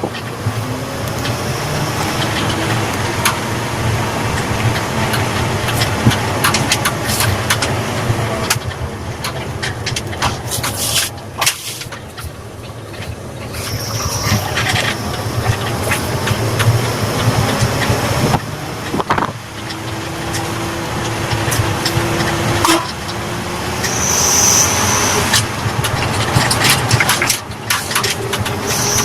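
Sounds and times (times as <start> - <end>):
pickup truck engine running: 0.0 - 29.0
thin high whistle: 23.8 - 25.3.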